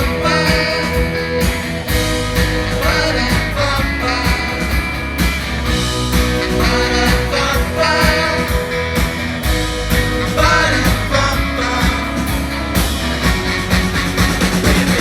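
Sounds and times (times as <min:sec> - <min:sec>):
person singing: 0:00.0 - 0:01.6, 0:02.6 - 0:04.8, 0:06.4 - 0:08.8, 0:10.2 - 0:12.3, 0:14.4 - 0:15.0
live pop-rock band: 0:00.0 - 0:15.0.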